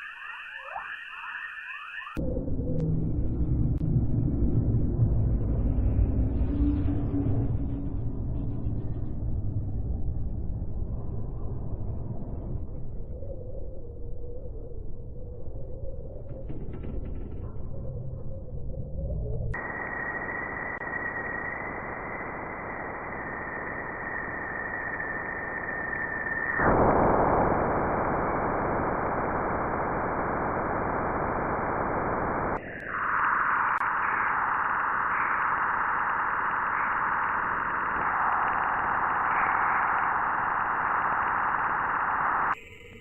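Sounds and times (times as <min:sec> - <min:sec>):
static-like hiss: 0:19.6 - 0:43.0.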